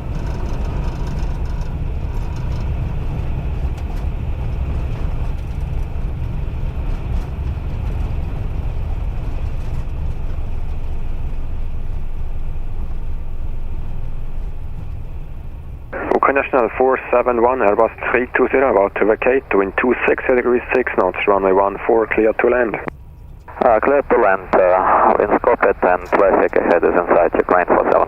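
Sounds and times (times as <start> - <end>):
aircraft engine noise: 0.0 - 28.0
wheels rumbling on runway: 0.0 - 28.0.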